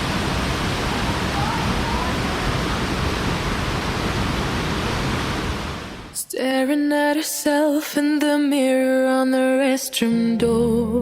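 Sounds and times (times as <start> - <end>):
waterfall rushing: 0.0 - 6.2
faint voices: 0.9 - 2.9.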